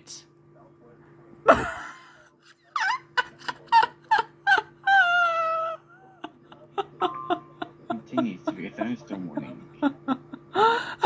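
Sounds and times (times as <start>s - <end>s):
person cackling laugh: 1.5s - 11.0s.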